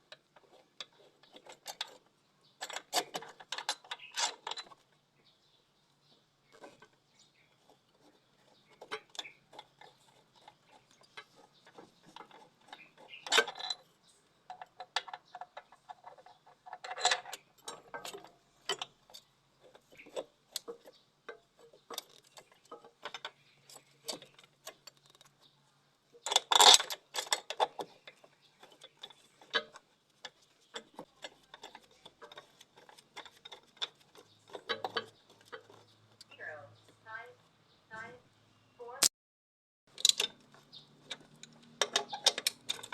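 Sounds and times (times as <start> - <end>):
hand tools clinking on metal: 8.7 - 13.9.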